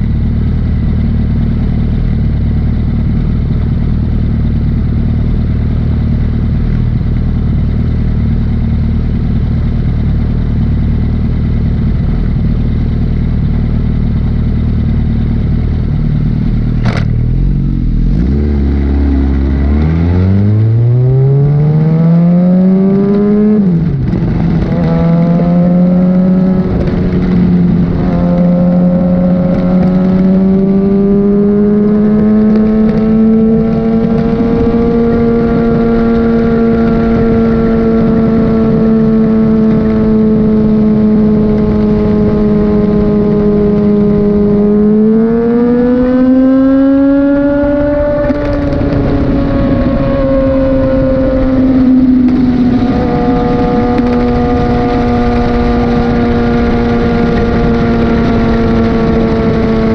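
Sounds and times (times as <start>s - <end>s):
motorcycle engine revving: 0.0s - 59.9s
sharp click: 16.8s - 17.2s.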